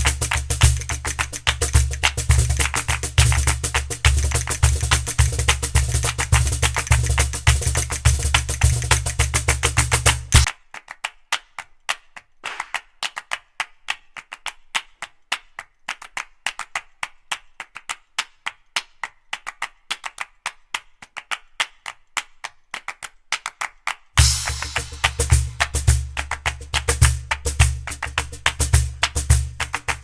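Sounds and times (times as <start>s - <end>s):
rapid wood-block clicks: 0.0s - 10.6s, 24.2s - 30.0s.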